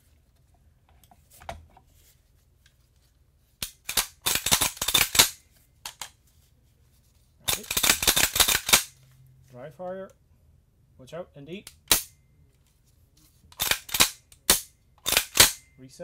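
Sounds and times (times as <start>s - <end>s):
rifle action metallic clacks: 3.6s - 6.1s, 7.5s - 9.0s, 13.6s - 15.6s.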